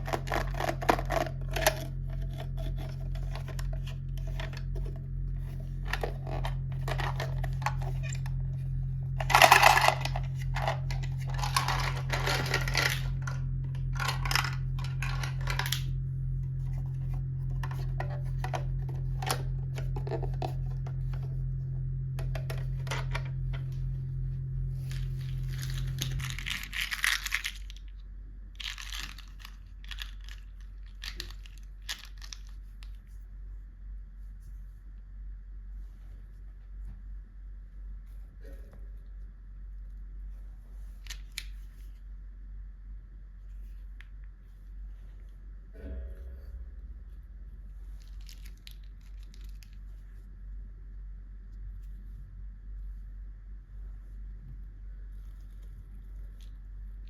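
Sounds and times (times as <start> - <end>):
steady low hum: 0.0 - 57.0
packaging being torn and crinkled: 24.9 - 27.9.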